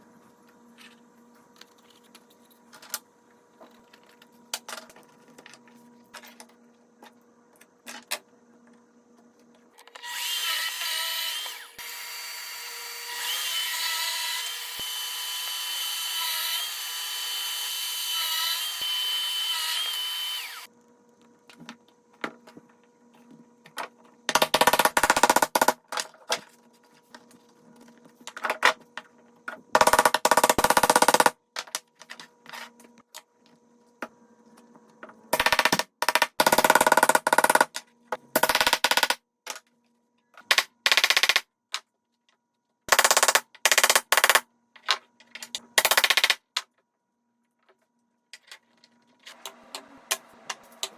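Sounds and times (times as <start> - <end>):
power tool motor whining: 10.0 - 20.7.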